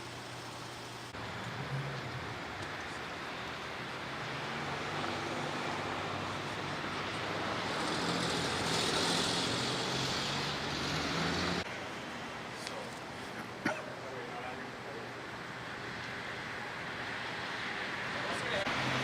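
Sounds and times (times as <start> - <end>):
vehicle passing: 1.1 - 11.7.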